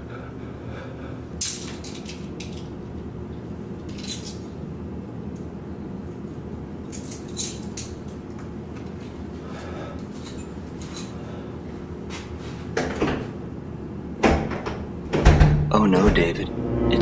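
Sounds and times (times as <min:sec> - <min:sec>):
keys clattering: 0:01.4 - 0:02.7, 0:03.8 - 0:04.6, 0:06.8 - 0:08.4, 0:09.0 - 0:11.2.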